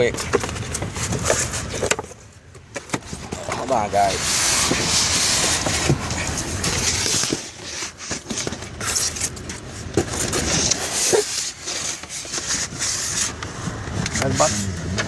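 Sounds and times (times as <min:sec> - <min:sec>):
packaging rustling: 0:00.0 - 0:13.8.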